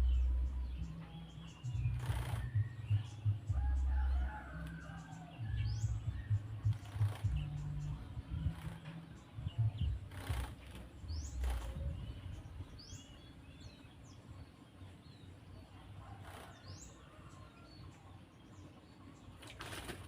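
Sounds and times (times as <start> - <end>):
low rumble: 5.4 - 13.0.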